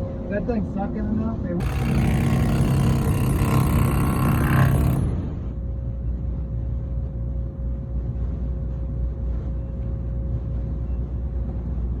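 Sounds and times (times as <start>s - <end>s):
furnace blower rumbling: 1.6s - 5.5s.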